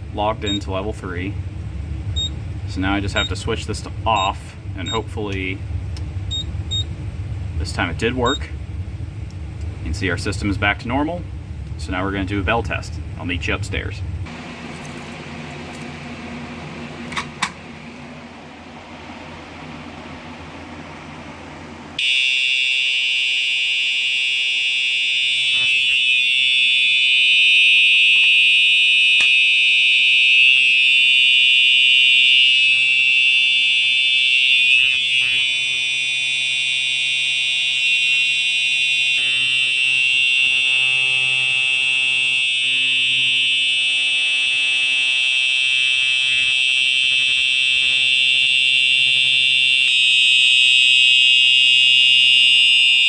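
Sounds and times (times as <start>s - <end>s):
fire alarm bells ringing: 0.2s - 1.0s, 2.9s - 5.5s, 22.0s - 53.0s.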